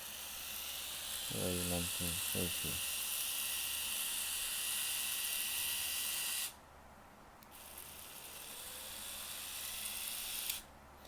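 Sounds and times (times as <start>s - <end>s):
epilator motor buzzing: 0.0s - 6.6s.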